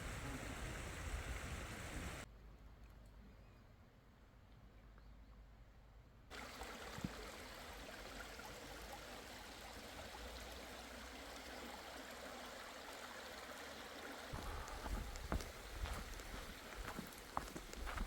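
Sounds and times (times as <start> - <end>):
stream running over rocks: 6.3 - 18.0.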